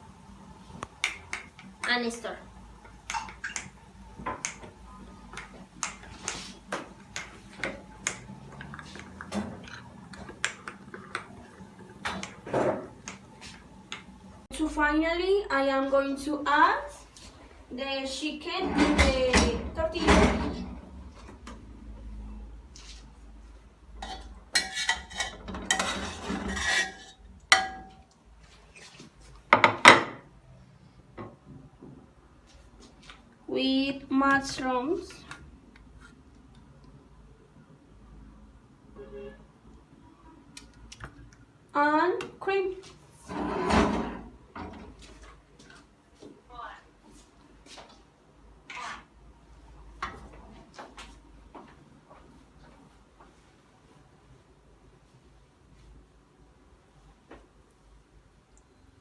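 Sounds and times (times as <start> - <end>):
utensils and dishes clinking: 24.0 - 28.1.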